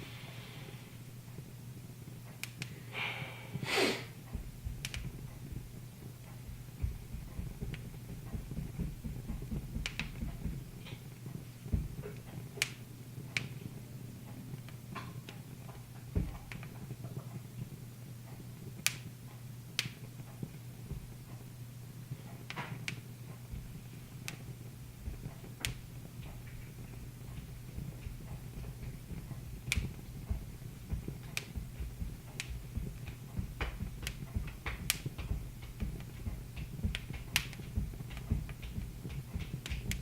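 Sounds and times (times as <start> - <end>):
low steady hum: 0.0 - 40.0
wood fire crackling: 0.0 - 40.0.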